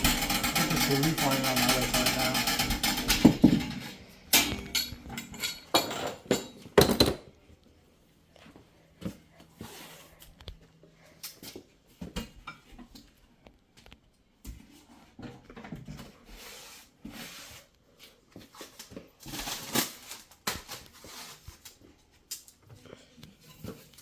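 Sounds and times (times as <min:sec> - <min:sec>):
scraping rustles of pipes: 0:00.0 - 0:06.3, 0:14.6 - 0:24.0.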